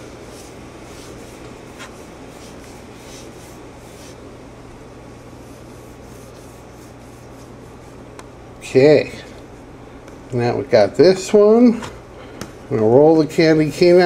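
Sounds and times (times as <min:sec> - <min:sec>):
steady low hum: 0:00.0 - 0:14.0
hands rolling play dough: 0:05.4 - 0:08.0.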